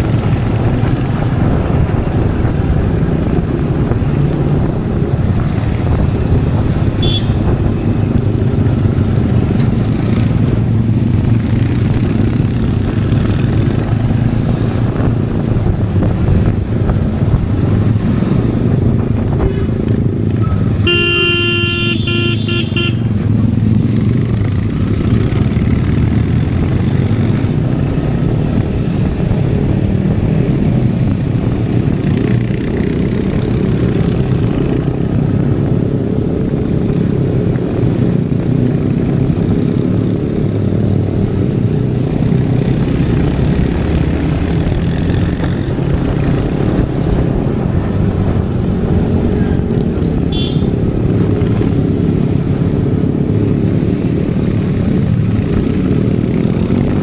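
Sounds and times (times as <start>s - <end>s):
motorcycle engine thumping: 50.3s - 51.3s.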